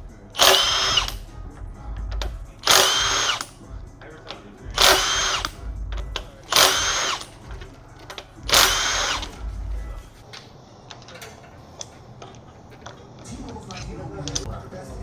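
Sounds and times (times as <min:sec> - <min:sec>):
cordless power tool whining: 0:00.0 - 0:01.3, 0:02.2 - 0:03.6, 0:04.7 - 0:10.2
light clicks and handling noise: 0:06.0 - 0:14.5.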